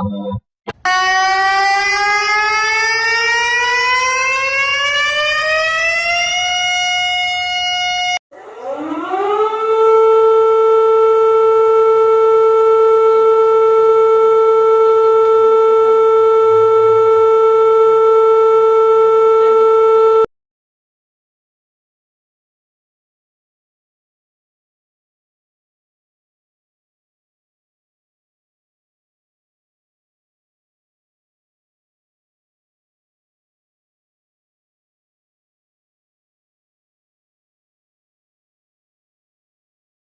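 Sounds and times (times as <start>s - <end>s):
steady tone siren: 0.0s - 20.3s
rising emergency siren: 0.7s - 20.3s.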